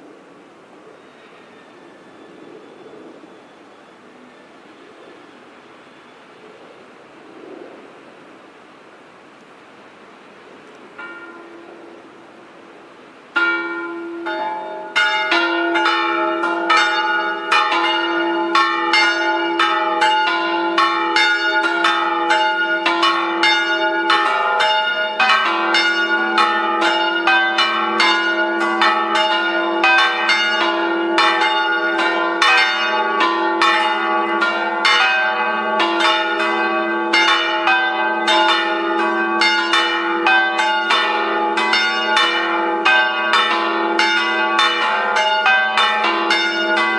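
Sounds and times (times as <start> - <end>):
church bells ringing: 11.0 - 46.9.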